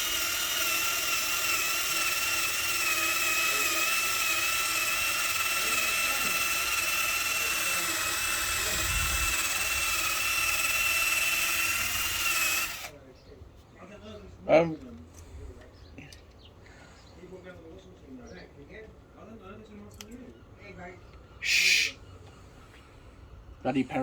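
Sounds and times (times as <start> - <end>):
drill sanding metal whine: 0.0 - 12.9.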